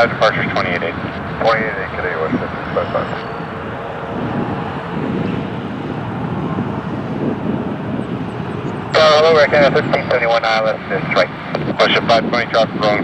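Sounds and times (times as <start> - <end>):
jet engines roaring: 0.0 - 13.0
wind buffeting microphone: 0.0 - 13.0.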